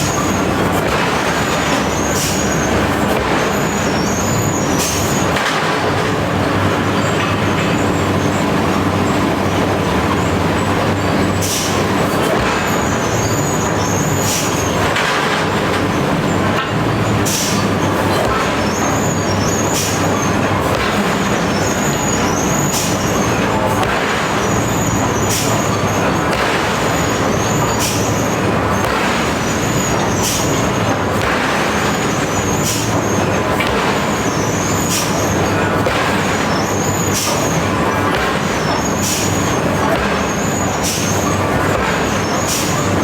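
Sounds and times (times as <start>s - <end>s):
heavy machinery running: 0.0s - 43.0s
hammer striking iron: 20.6s - 21.2s, 28.8s - 42.9s.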